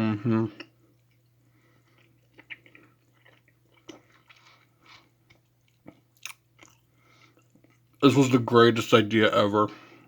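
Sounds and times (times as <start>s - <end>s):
low steady hum: 0.0s - 10.0s
person chewing gummy candy: 0.6s - 8.0s.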